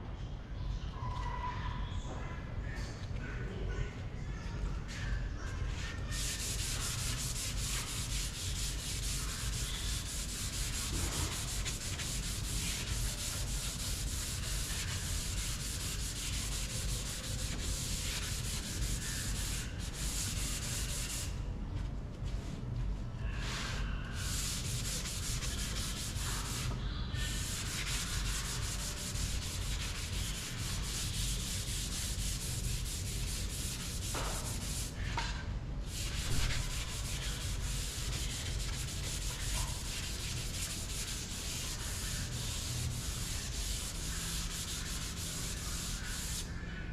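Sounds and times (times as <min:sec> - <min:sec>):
sanding scratching hiss: 0:06.2 - 0:21.3, 0:24.2 - 0:34.9, 0:35.9 - 0:46.4.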